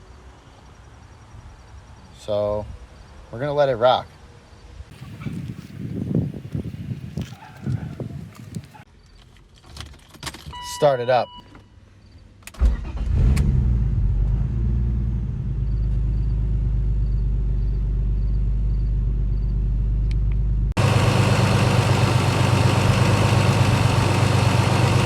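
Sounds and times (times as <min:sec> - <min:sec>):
car engine starting and idling: 0:12.5 - 0:25.0.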